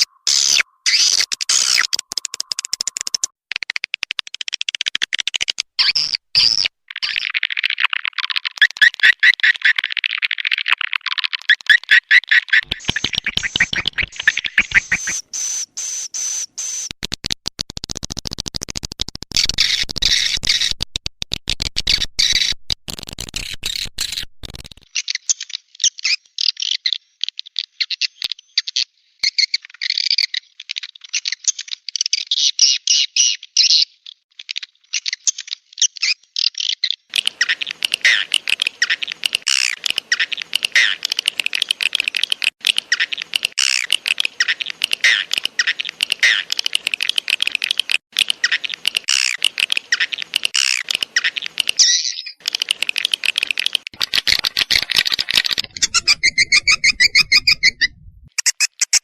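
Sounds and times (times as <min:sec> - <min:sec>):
swiftlets chittering and twittering: 0:00.0 - 0:03.3, 0:12.5 - 0:15.7, 0:53.9 - 0:59.0.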